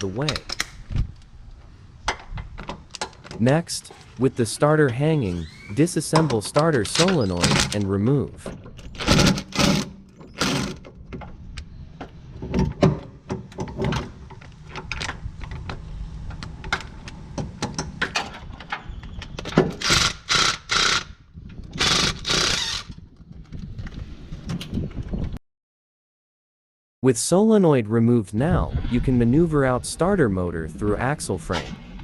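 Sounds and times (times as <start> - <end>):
metal clicks of hand tools: 0.2 - 0.8.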